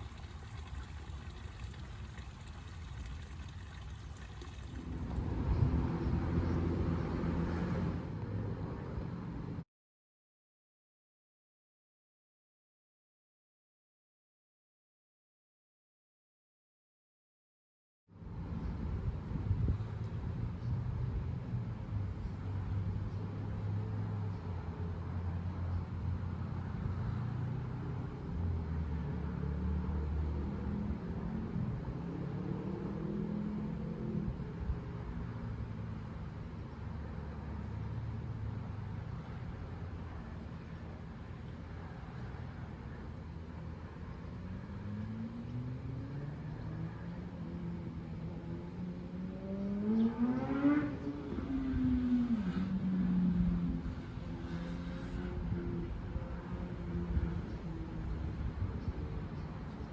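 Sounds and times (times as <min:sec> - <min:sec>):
low engine hum: 0:00.0 - 0:09.6
road noise: 0:00.0 - 0:09.6, 0:18.2 - 0:59.9.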